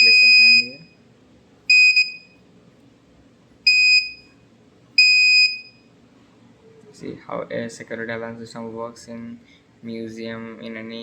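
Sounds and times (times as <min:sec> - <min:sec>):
high-pitched buzzer beeps: 0:00.0 - 0:01.0, 0:01.7 - 0:02.4, 0:03.7 - 0:04.3, 0:05.0 - 0:05.9.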